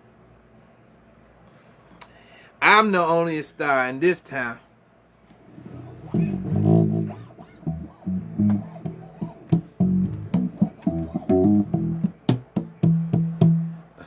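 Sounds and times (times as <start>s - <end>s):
bass guitar riff: 5.7s - 13.8s.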